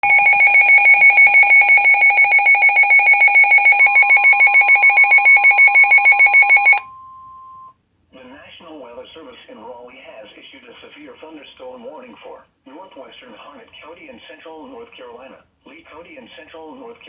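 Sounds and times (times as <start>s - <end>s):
rapid electronic alert beeping: 0.0s - 6.9s
steady warning alarm tone: 0.0s - 7.7s.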